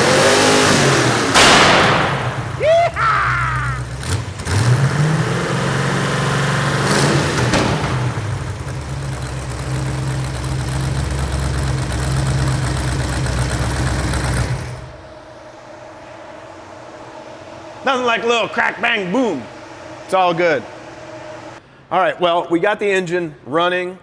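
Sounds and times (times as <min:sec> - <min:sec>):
engine revving and idling: 0:00.0 - 0:15.7.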